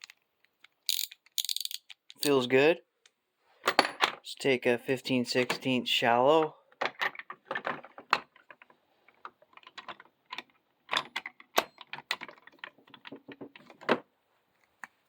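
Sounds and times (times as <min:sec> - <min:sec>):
metal sockets clicking and clinking: 0:00.0 - 0:02.4, 0:06.7 - 0:14.0.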